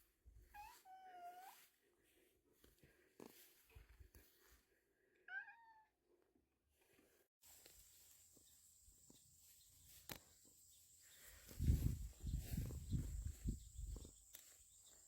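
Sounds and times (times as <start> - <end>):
cat meowing: 0.6 - 1.6, 5.3 - 5.9.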